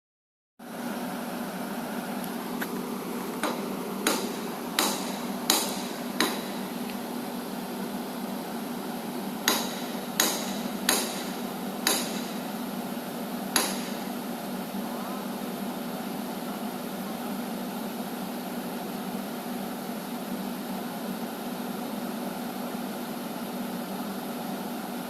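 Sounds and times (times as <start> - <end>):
steady low hum: 0.6 - 23.4
sharp ringing knocks: 3.4 - 6.7, 9.4 - 12.5, 13.5 - 14.1.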